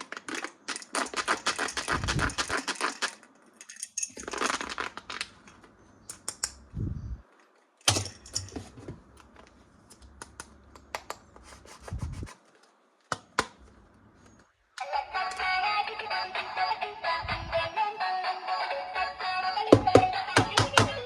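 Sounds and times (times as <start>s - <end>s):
packaging rustling: 4.2s - 5.5s
music: 14.8s - 21.0s.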